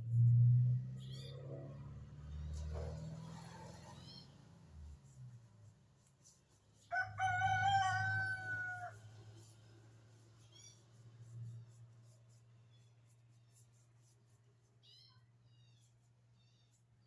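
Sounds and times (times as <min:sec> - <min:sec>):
rooster crowing: 0:06.9 - 0:09.2.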